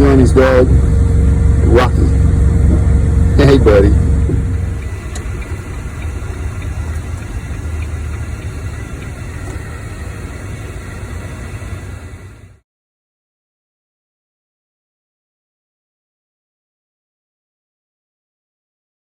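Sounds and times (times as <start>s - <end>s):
diesel truck engine rumbling: 0.0s - 12.6s.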